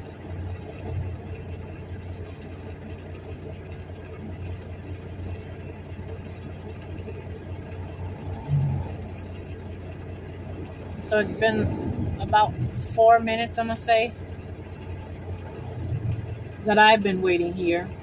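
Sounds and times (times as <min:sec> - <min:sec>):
car engine idling: 0:00.0 - 0:18.0
short low sound: 0:08.1 - 0:09.2.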